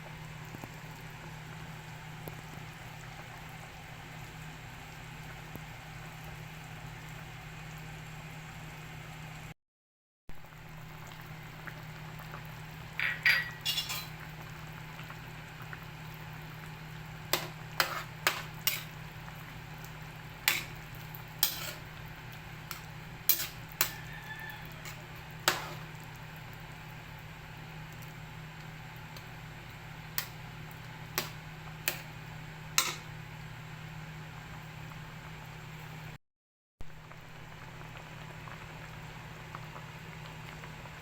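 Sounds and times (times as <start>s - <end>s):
pan simmering: 0.0s - 9.5s, 10.3s - 36.2s, 36.8s - 41.0s
metal utensil clinking on pan: 13.0s - 14.2s, 17.4s - 18.9s, 20.5s - 20.7s, 21.4s - 21.8s, 22.7s - 24.1s, 32.8s - 33.0s.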